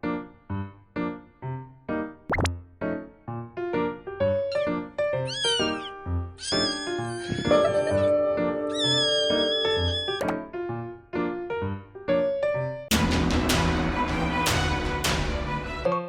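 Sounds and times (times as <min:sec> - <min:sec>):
cat meowing: 0:04.5 - 0:10.2
bouncy background music: 0:12.9 - 0:16.0.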